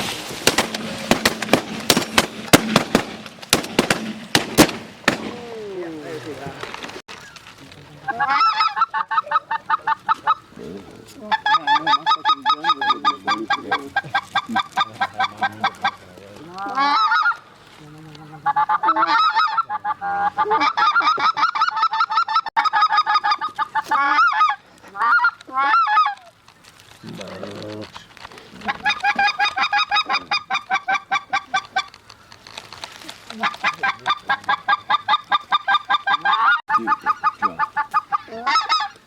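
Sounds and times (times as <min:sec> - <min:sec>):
goose honking: 0:08.0 - 0:10.5, 0:11.1 - 0:17.4, 0:18.2 - 0:26.3, 0:28.6 - 0:32.0, 0:33.3 - 0:39.0.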